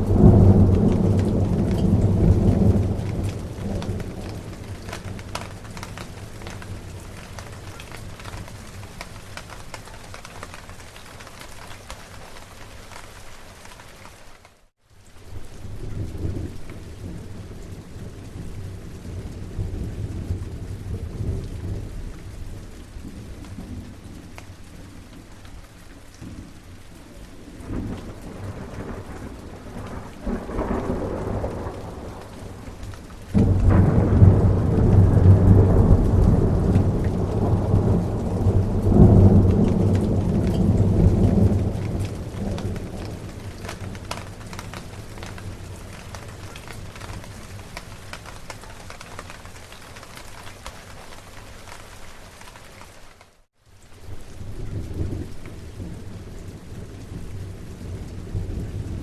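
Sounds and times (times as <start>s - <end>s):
loud thunder clap: 0.0s - 10.2s, 27.6s - 48.3s
thunder rumble: 0.0s - 12.0s, 26.2s - 50.1s
steady rain: 0.0s - 59.0s.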